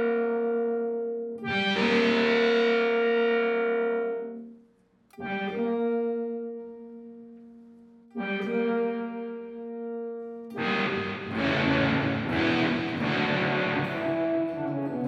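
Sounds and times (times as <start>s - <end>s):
electric guitar ringing chords: 8.1s - 15.0s.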